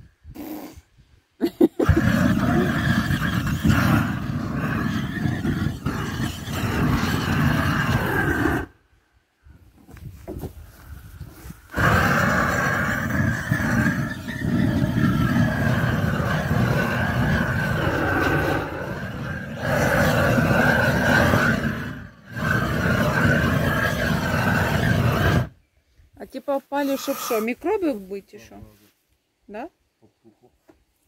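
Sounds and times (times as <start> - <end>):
blowtorch flame rushing: 1.8 - 8.8, 11.4 - 25.6.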